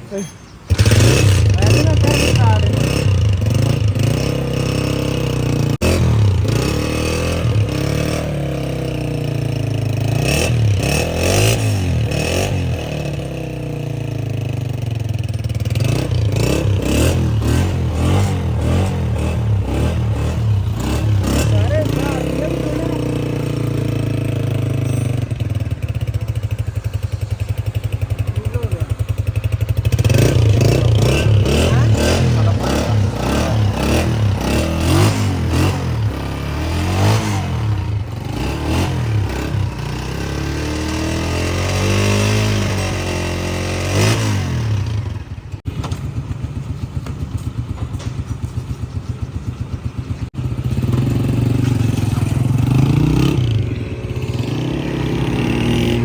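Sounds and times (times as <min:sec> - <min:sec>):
motorcycle engine idling and revving: 0:00.0 - 0:56.0.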